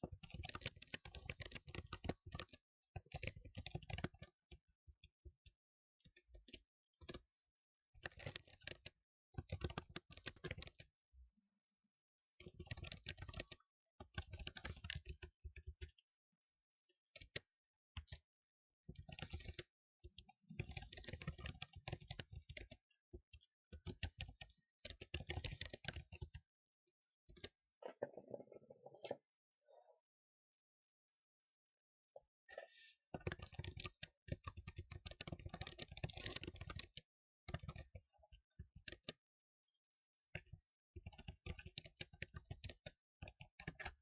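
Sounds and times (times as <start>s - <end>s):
typing on computer keyboard: 0.1s - 4.4s, 8.0s - 10.9s, 12.4s - 16.0s, 17.2s - 18.3s, 19.0s - 22.8s, 23.8s - 26.4s, 33.2s - 38.0s, 38.6s - 39.2s, 40.4s - 44.0s.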